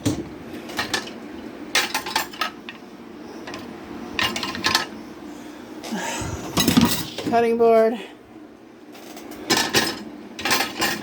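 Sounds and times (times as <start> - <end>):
dishes clinking: 6.6 - 7.3.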